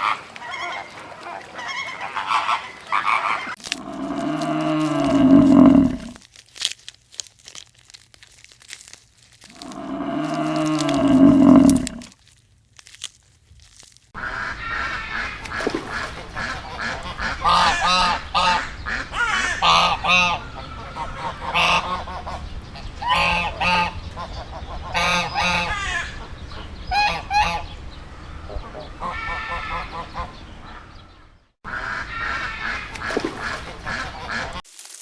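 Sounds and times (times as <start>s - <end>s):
waterfowl honking: 0.0s - 6.1s, 14.2s - 30.9s, 31.7s - 34.6s
cow mooing: 3.6s - 6.2s, 9.5s - 12.1s.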